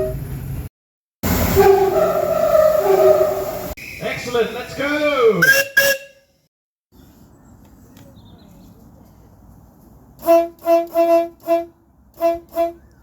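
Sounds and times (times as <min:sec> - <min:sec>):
train horn blasts: 0:01.4 - 0:03.7, 0:10.2 - 0:12.9.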